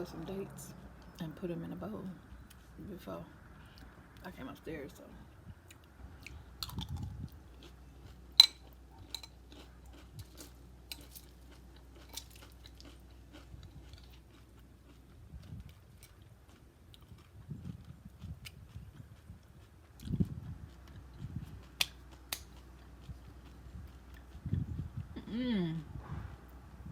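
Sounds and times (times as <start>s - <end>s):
chewing and crunching cereal: 5.7s - 25.0s.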